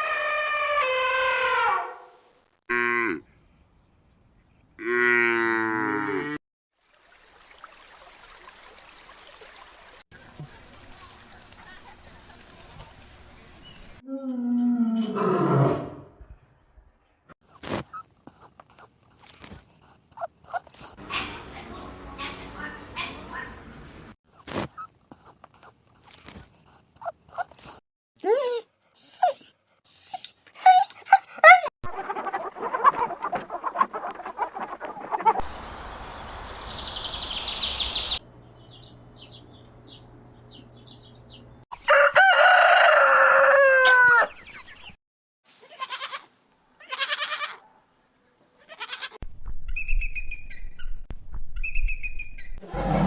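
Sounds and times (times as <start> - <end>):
rooster crowing: 41.8 - 44.3.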